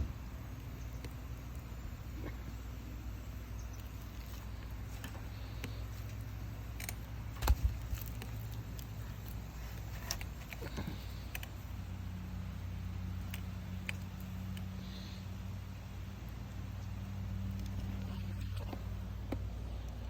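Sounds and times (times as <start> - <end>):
wood fire crackling and popping: 0.1 - 14.8.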